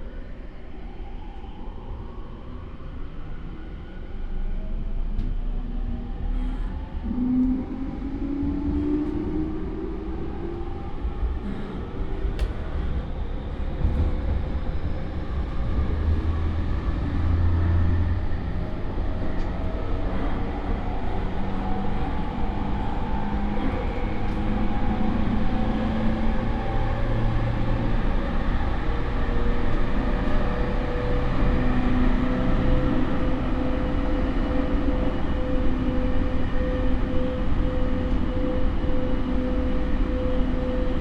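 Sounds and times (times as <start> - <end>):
train inverter and motor whine: 0.0 - 41.0
wheel and rail rumble: 8.3 - 41.0.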